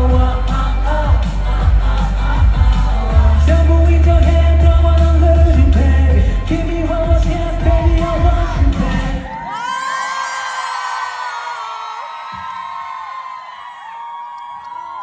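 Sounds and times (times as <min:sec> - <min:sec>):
pop song over sound system: 0:00.0 - 0:10.6.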